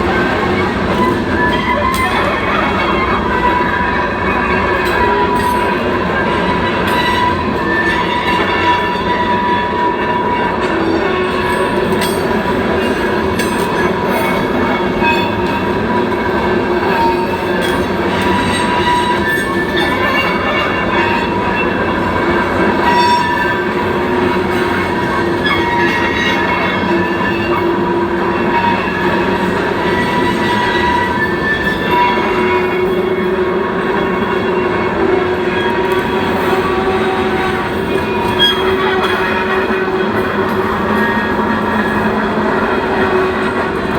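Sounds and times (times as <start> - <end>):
freight train rumbling on rails: 0.0 - 43.9
wheel squeal: 0.0 - 43.9.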